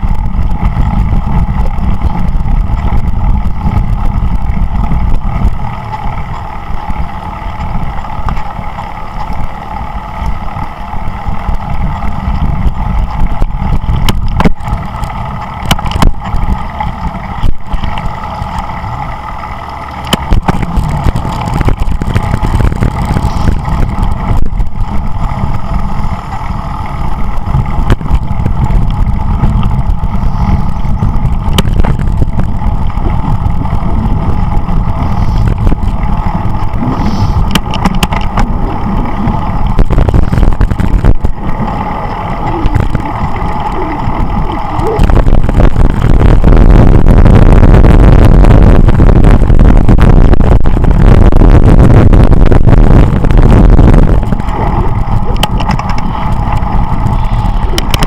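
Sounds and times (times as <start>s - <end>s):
road and tyre noise: 0.0s - 58.0s
wind buffeting microphone: 0.0s - 58.0s
scattered clicks: 54.0s - 58.0s.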